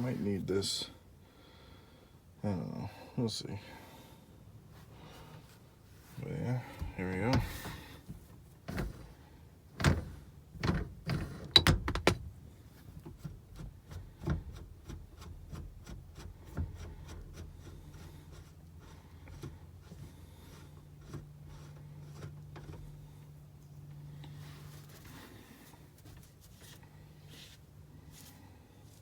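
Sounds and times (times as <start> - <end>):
gear shifter knocks and clunks: 6.6 - 18.3.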